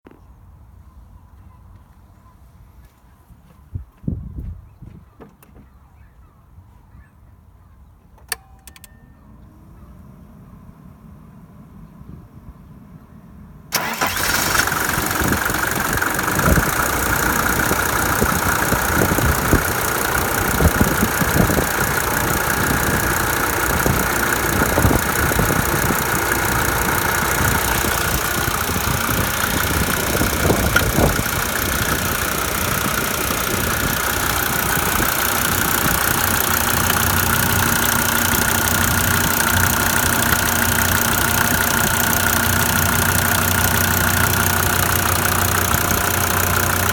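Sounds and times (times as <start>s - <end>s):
diesel engine idling unevenly: 13.7s - 46.9s
diesel engine starting: 13.7s - 46.9s.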